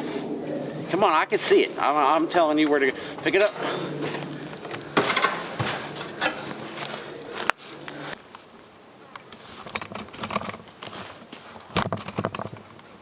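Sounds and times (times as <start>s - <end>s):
metal cage rattling: 2.7s - 7.1s.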